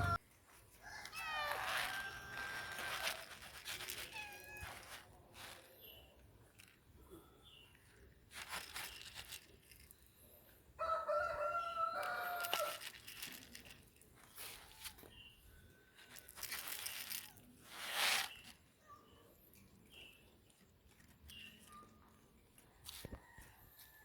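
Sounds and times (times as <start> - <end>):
rooster crowing: 0.0 - 0.2, 0.8 - 3.3, 10.8 - 12.8
rustling noise: 0.0 - 6.8, 8.2 - 9.9, 12.4 - 18.6.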